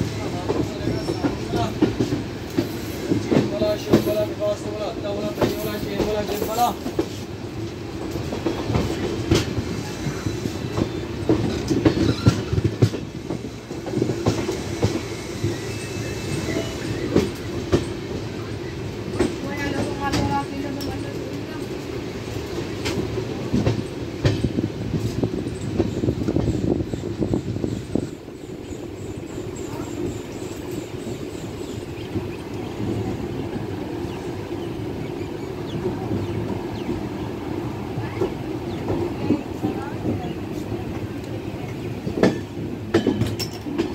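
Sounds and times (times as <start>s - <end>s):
train coaches rolling: 0.0s - 43.9s
wheel clacks over rail joints: 38.0s - 43.9s.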